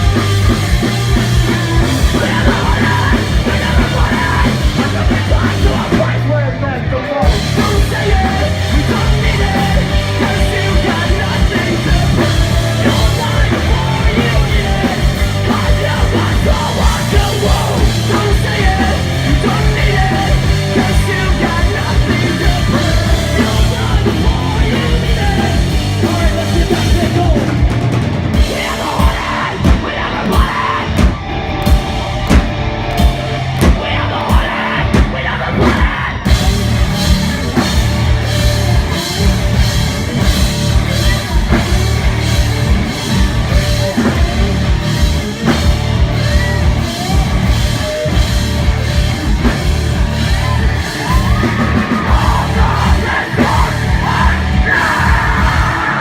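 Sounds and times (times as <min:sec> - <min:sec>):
punk rock band playing live: 0:00.0 - 0:56.0
shouted vocals: 0:28.4 - 0:56.0.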